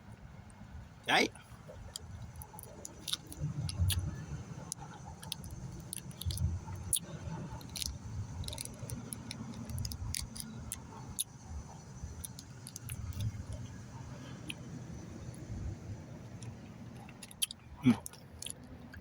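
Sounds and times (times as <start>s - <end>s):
chocolate bar wrapper crinkles: 1.9s - 11.3s.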